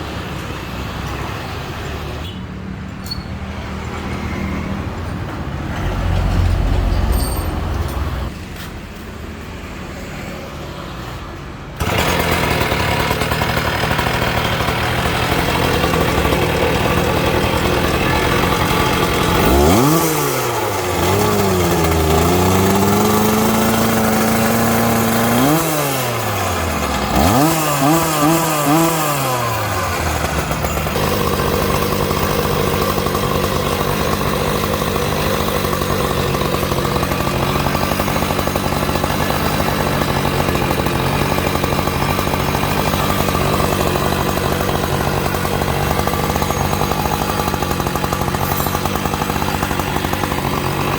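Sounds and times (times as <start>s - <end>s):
cut-off saw engine revving: 11.8s - 50.9s.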